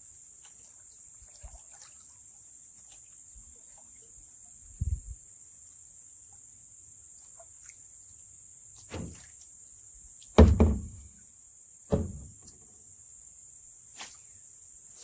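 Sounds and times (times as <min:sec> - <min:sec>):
hollow knocks on canoe hull: 0:08.9 - 0:09.2, 0:10.4 - 0:11.1, 0:11.9 - 0:12.4.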